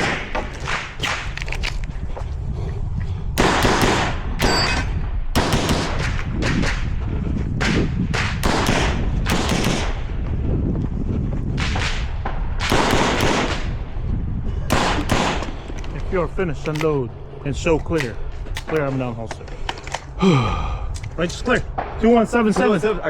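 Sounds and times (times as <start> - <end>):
pistol shots: 3.4 - 6.8, 7.6 - 10.0, 11.6 - 13.8, 14.7 - 15.6.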